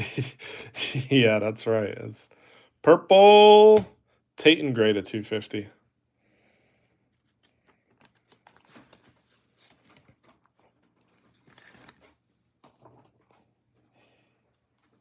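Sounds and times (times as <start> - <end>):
trading cards rustling and clicking: 7.1 - 13.8.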